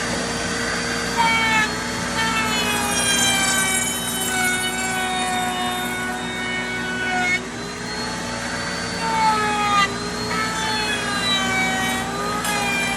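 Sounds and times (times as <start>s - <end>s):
router whining: 0.0s - 12.9s.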